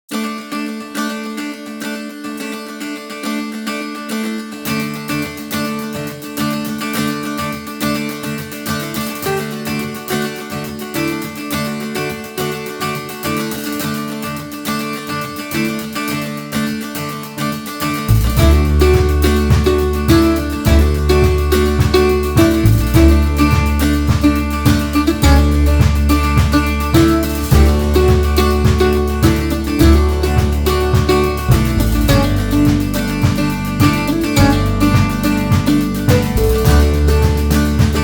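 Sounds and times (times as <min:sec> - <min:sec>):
picked acoustic guitar: 0:00.1 - 0:38.0
bass line: 0:18.1 - 0:38.0.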